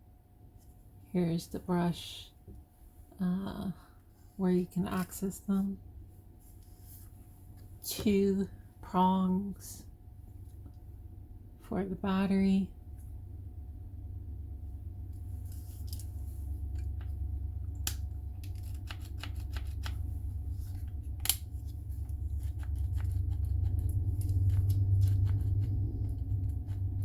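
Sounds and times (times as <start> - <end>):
low handling rumble: 19.3 - 27.0.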